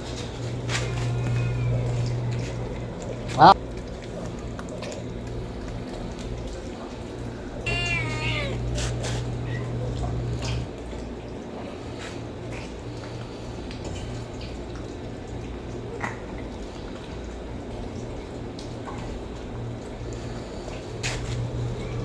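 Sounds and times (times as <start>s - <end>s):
low hum: 0.4s - 3.5s, 7.8s - 10.7s
kitten meowing: 0.8s - 2.7s, 7.7s - 10.6s.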